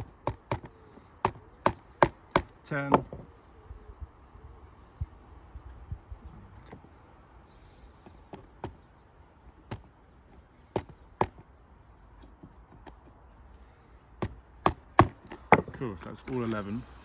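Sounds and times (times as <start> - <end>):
hammer striking nail into wood: 0.0 - 3.1, 14.2 - 15.7.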